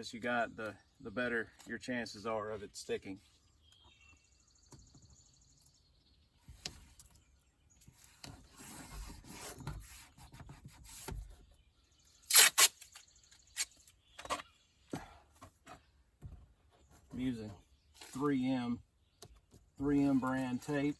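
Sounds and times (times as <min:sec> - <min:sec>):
tape rubbing on plastic panel: 0:07.9 - 0:11.5
masking tape ripping off roll: 0:12.2 - 0:13.8.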